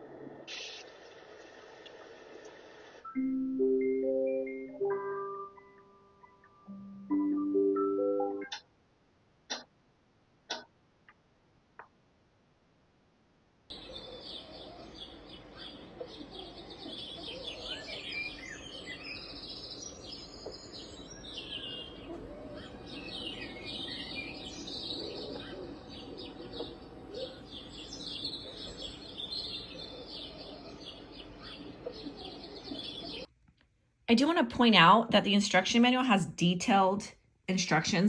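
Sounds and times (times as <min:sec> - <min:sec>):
birds chirping and whistling: 0:13.7 - 0:33.3.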